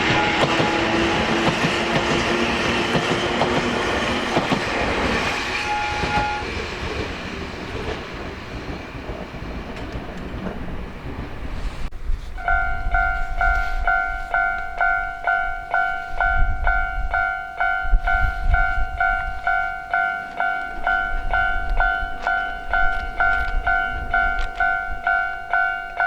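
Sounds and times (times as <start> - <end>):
railroad crossing bell clanging: 0.0 - 4.5, 5.2 - 6.6, 12.4 - 26.0.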